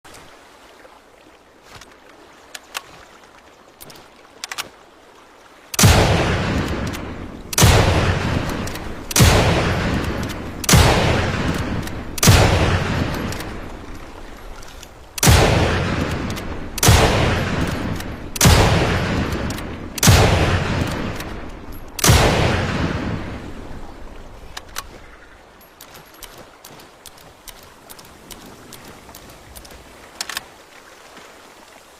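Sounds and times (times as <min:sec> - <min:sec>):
faint clicks: 0:03.7 - 0:04.8, 0:13.0 - 0:15.3, 0:24.1 - 0:30.6
rifle shots: 0:05.8 - 0:13.6, 0:15.2 - 0:21.4, 0:22.0 - 0:23.5.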